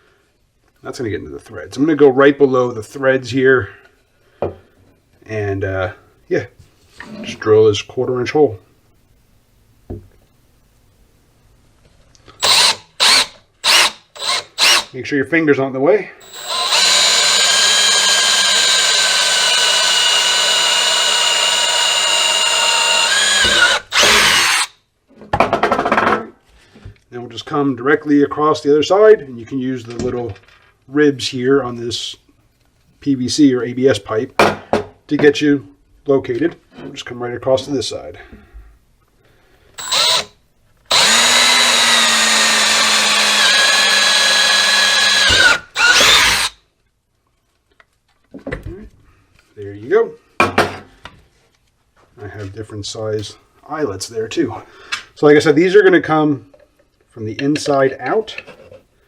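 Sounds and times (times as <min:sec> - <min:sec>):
electric drill boring plastic pipe: 0:12.4 - 0:14.9, 0:16.2 - 0:24.8, 0:39.8 - 0:46.6.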